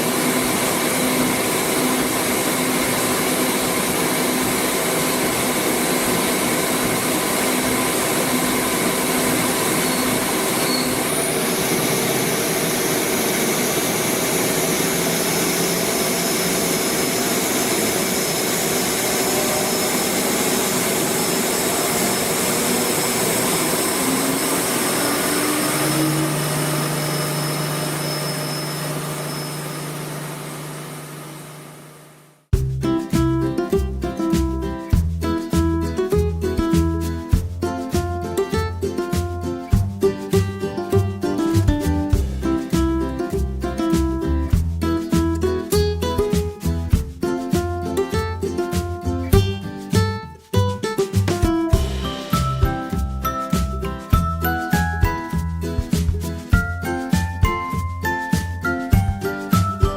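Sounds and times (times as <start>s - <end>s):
lathe machine hiss and hum: 0.0s - 32.2s.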